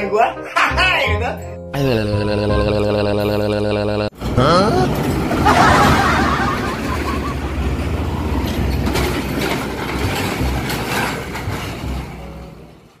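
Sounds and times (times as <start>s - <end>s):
heavy vehicle rumbling: 3.2s - 13.0s
rattling clanks: 4.9s - 13.0s.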